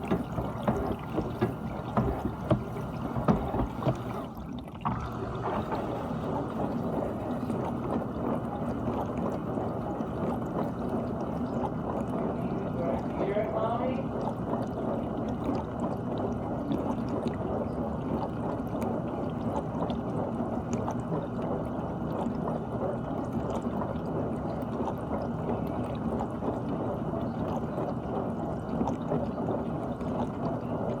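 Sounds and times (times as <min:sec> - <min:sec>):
dishwasher water spraying and sloshing: 0:00.0 - 0:14.1.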